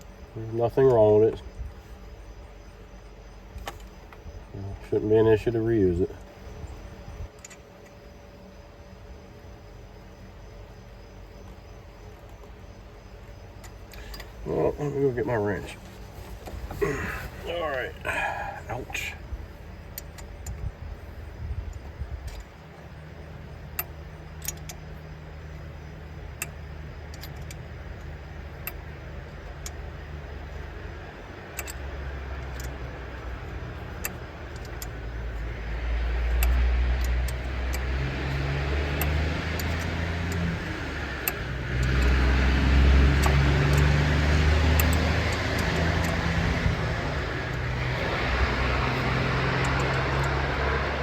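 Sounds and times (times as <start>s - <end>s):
vehicle engine humming: 0.0s - 51.0s
light clicks: 33.8s - 35.5s, 36.1s - 42.2s, 43.2s - 46.7s, 48.8s - 51.0s.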